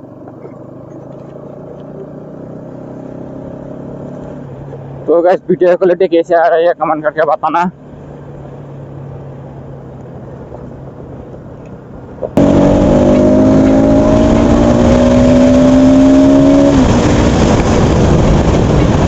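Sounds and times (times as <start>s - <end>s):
motorcycle engine accelerating: 0.0s - 4.9s, 12.2s - 19.0s
wind noise on microphone: 12.4s - 19.0s.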